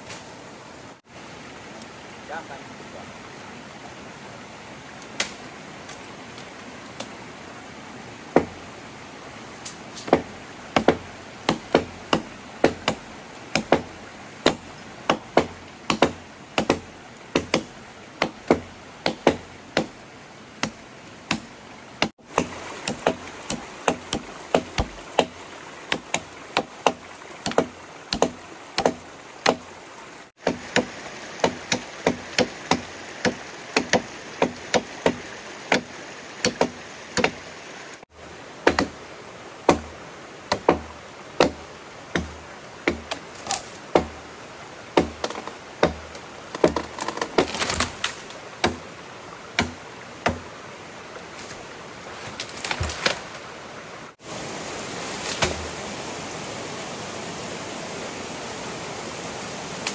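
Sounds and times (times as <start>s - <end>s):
steady background hiss: 0.0s - 59.9s
tool chopping wood: 8.4s - 8.6s, 10.0s - 20.0s, 20.6s - 29.7s, 30.4s - 37.4s, 38.6s - 39.0s, 39.7s - 44.2s, 45.0s - 48.8s, 49.6s - 50.5s, 55.3s - 55.7s.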